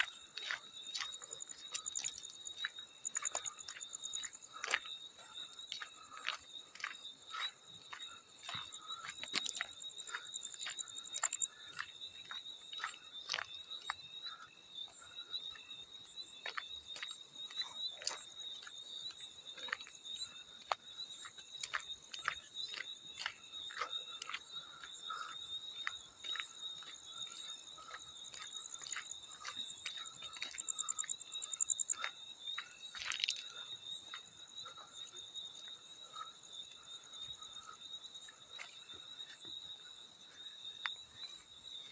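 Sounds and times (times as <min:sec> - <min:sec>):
cricket chirping: 0:00.0 - 0:41.9
water splashes and drips: 0:32.9 - 0:33.6.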